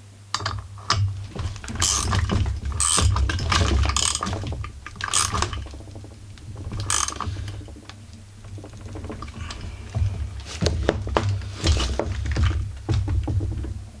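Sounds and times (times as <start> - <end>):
ratcheting wrench clicking: 0.3 - 7.9
metal parts knocking: 0.3 - 14.0.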